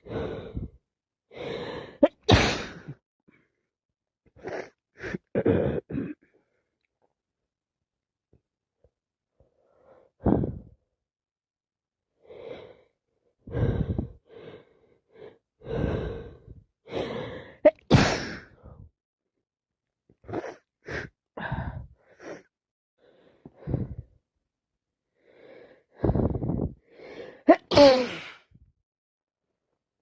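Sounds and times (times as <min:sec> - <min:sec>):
person sneezing: 0:02.0 - 0:02.9, 0:17.7 - 0:18.5, 0:27.5 - 0:28.4
short gasping breaths: 0:13.5 - 0:17.6.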